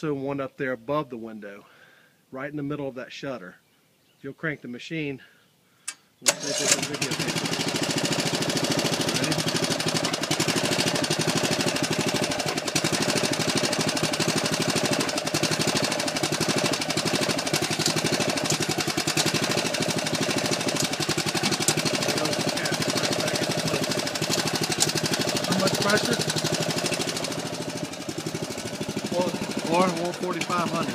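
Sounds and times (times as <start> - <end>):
small engine running: 6.3 - 30.9.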